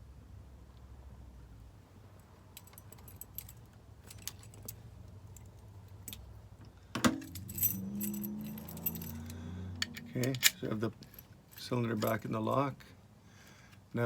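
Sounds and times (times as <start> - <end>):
key jingling: 2.6 - 4.8, 7.2 - 9.4, 10.0 - 12.3
metal clinks: 2.6 - 6.3, 7.2 - 12.3
metal clicks of lock parts: 5.4 - 11.1.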